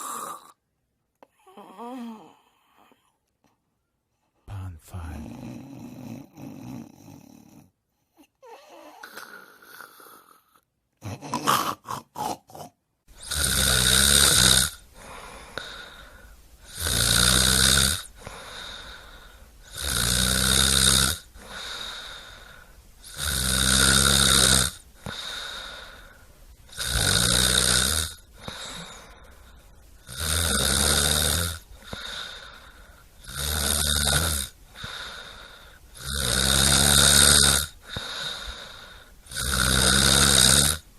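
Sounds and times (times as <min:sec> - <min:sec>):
person snoring loudly: 0:00.0 - 0:00.6, 0:05.0 - 0:07.7, 0:08.4 - 0:29.1, 0:30.0 - 0:40.8
soft breaths: 0:14.8 - 0:16.8, 0:18.0 - 0:19.8, 0:21.3 - 0:23.2, 0:24.8 - 0:26.8, 0:28.2 - 0:30.1, 0:31.6 - 0:33.3, 0:34.5 - 0:36.0, 0:37.7 - 0:39.4.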